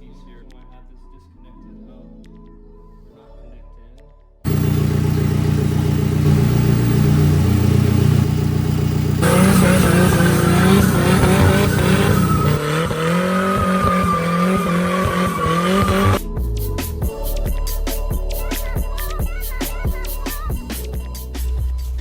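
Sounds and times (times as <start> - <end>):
high whine: 4.5 - 12.6
engine revving: 4.5 - 16.2.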